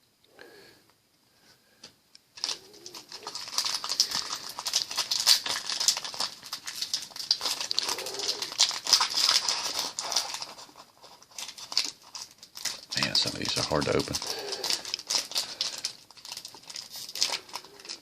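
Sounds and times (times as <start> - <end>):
foil wrapper crinkling: 2.4 - 18.0.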